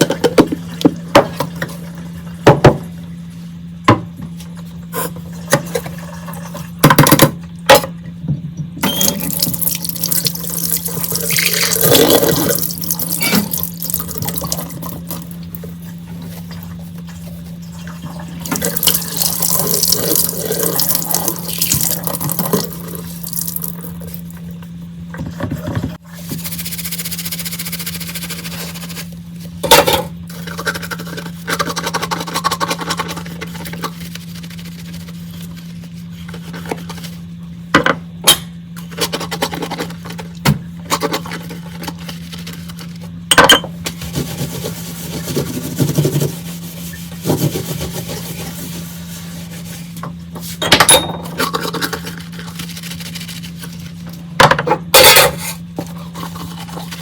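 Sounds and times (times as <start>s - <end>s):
tap water splashing in sink: 9.1s - 15.6s, 18.4s - 24.2s.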